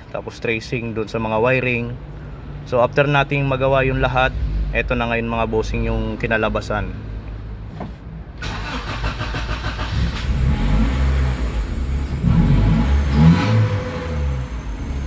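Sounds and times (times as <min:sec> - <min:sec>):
car engine starting and revving: 0:08.4 - 0:15.0.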